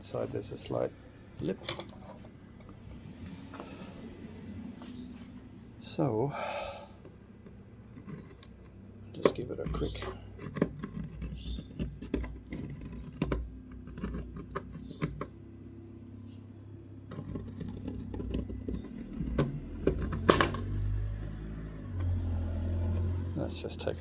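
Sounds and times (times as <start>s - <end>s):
hand tool scraping metal: 9.2s - 15.3s.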